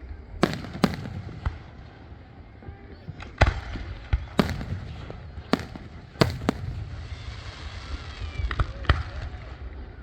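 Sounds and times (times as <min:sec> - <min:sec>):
firework bangs: 0:00.4 - 0:08.2
firework crackling pops: 0:00.4 - 0:09.2.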